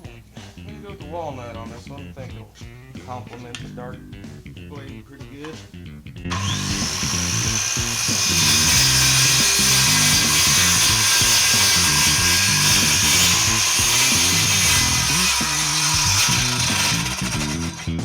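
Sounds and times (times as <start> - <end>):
background music: 0.0 - 18.0
power tool whine: 6.3 - 18.0.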